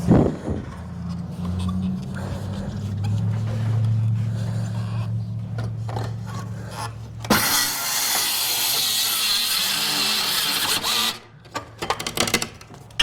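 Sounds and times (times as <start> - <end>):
circular saw cutting wood: 7.3 - 11.3.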